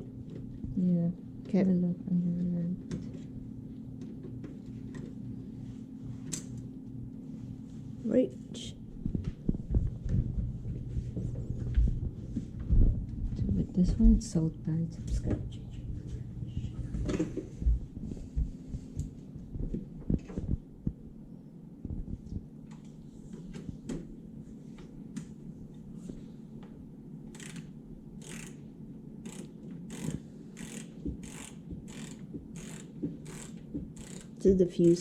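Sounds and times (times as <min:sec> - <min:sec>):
screwdriver turning a screw: 0:27.3 - 0:28.6, 0:29.2 - 0:34.4.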